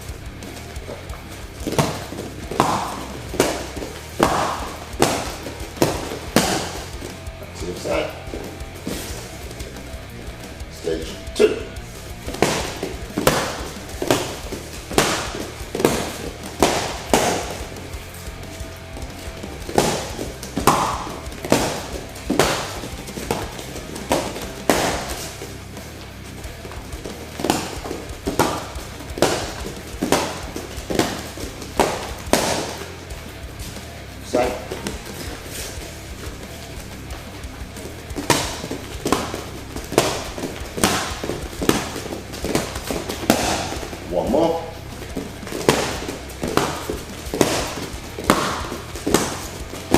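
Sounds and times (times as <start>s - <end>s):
background music: 0.0s - 49.9s
punch impacts on target: 1.6s - 7.1s, 12.3s - 17.8s, 18.9s - 25.4s, 26.7s - 32.9s, 38.1s - 44.0s.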